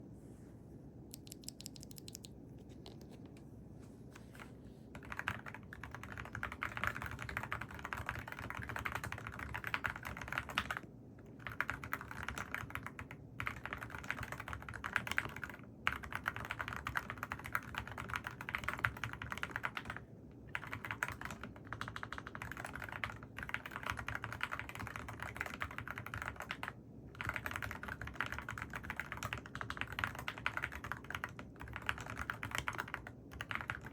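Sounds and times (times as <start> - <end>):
mechanical keyboard key clacks: 1.1 - 3.0.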